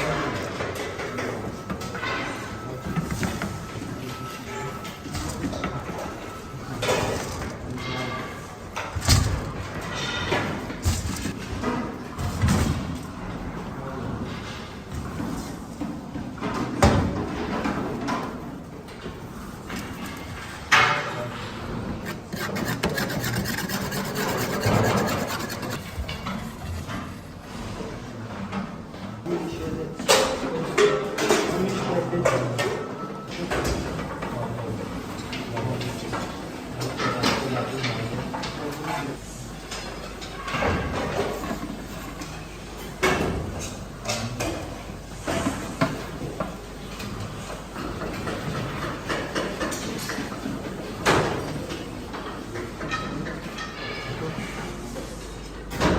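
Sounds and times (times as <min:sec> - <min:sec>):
rubbing and scraping strokes: 0:22.0 - 0:26.6.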